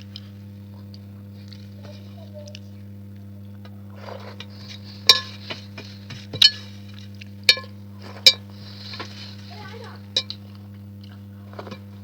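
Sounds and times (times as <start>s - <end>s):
metal utensil clinking on plate: 5.1s - 5.4s, 7.5s - 8.4s
light scrapes and taps: 8.0s - 9.6s.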